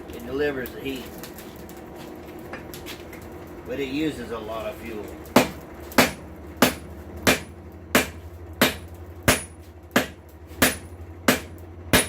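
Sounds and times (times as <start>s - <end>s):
steady low hum: 0.0s - 12.0s
hammer striking steel on anvil: 5.4s - 12.0s.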